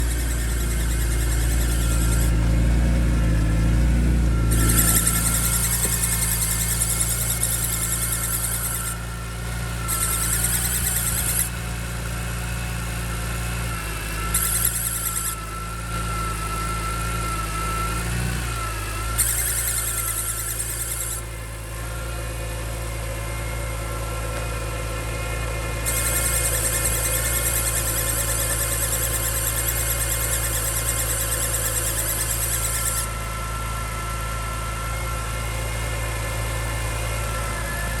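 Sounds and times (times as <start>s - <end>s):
high-pitched squeal: 0.0s - 24.4s, 25.8s - 38.0s
car engine idling with whine: 0.0s - 38.0s.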